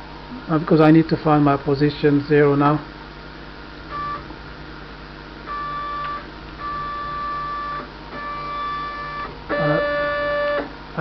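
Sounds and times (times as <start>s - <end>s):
stepper motors whining: 5.5s - 10.7s.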